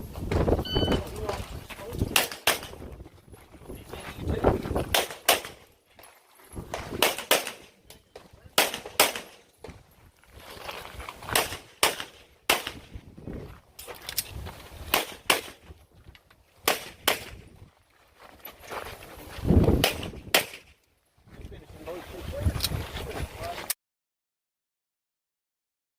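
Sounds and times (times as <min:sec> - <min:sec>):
pistol shots: 0:02.1 - 0:02.8, 0:04.9 - 0:05.6, 0:06.8 - 0:07.8, 0:08.5 - 0:09.4, 0:11.3 - 0:12.9, 0:14.9 - 0:15.6, 0:16.6 - 0:17.4, 0:19.8 - 0:20.7.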